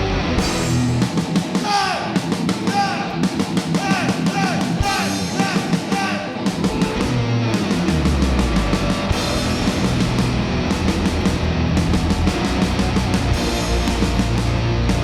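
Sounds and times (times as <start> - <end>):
punk rock band playing: 0.0 - 15.0.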